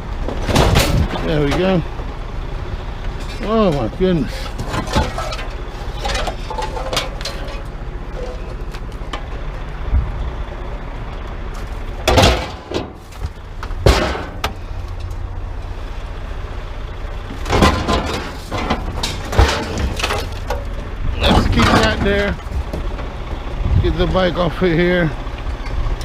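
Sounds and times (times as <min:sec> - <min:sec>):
steady low rumble: 0:00.0 - 0:26.0
scrap items knocking and clunking: 0:04.4 - 0:07.7, 0:12.0 - 0:14.6, 0:17.3 - 0:23.0.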